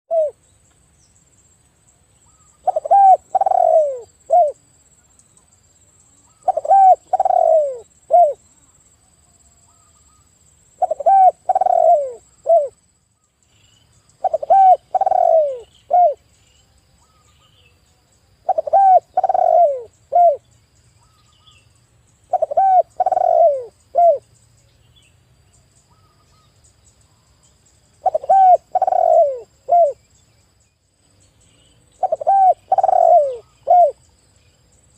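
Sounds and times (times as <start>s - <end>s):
dove cooing: 0.1s - 0.4s, 2.6s - 4.6s, 6.4s - 8.4s, 10.8s - 12.8s, 14.2s - 16.2s, 18.4s - 20.4s, 22.3s - 24.2s, 28.0s - 30.0s, 32.0s - 34.0s.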